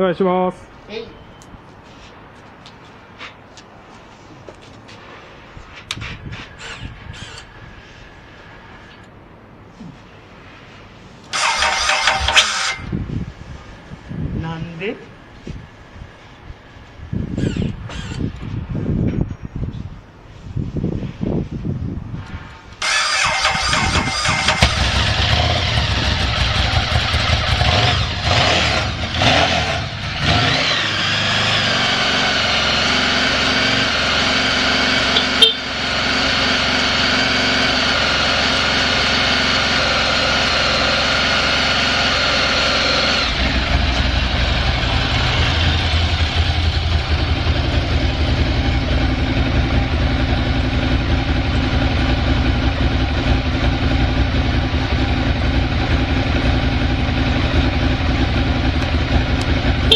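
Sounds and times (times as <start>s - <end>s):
motorcycle engine idling: 23.2s - 28.3s, 43.3s - 59.9s.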